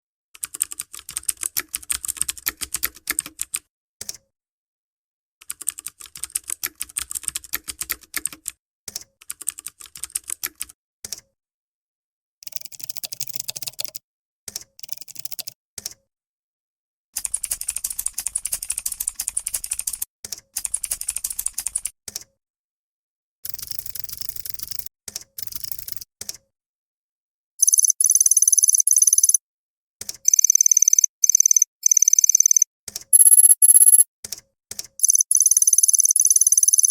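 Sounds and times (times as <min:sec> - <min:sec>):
keyboard typing: 0:27.6 - 0:29.4, 0:30.1 - 0:34.1, 0:35.0 - 0:36.9.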